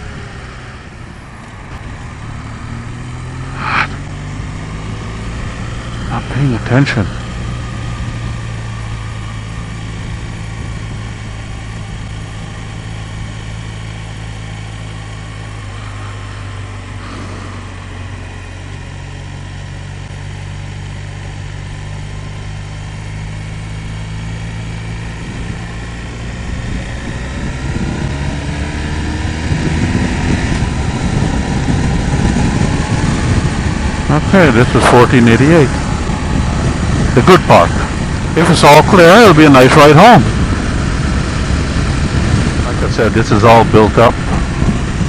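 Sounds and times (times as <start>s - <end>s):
motorcycle engine cruising: 0.0s - 45.0s
wind noise: 2.7s - 6.7s, 25.1s - 45.0s.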